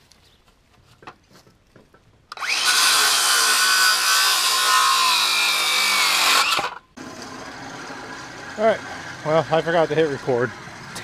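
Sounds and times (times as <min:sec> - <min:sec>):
electric drill running under load: 0:02.3 - 0:06.8.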